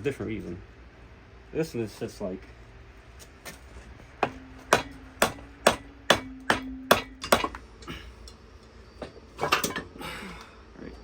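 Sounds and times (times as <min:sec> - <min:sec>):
hammer striking metal: 0:04.2 - 0:07.6.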